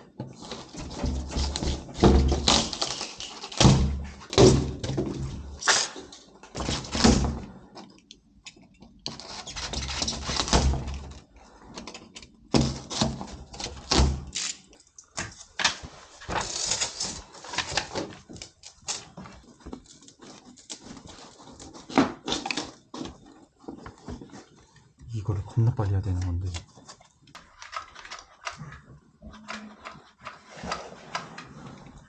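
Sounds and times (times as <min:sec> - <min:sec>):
wall panels knocking and scraping: 0:00.0 - 0:05.6.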